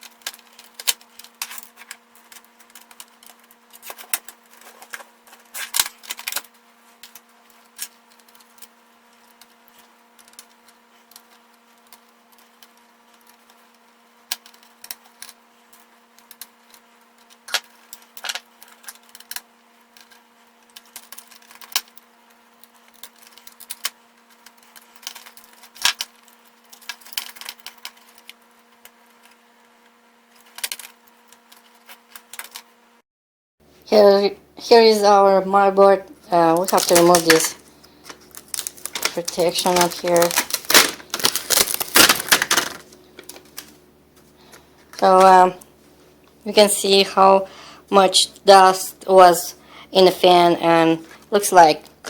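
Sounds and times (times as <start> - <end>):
low electrical hum: 0.0 - 33.0, 33.6 - 52.0
plastic and metal parts clicking: 22.7 - 28.4, 36.6 - 43.7.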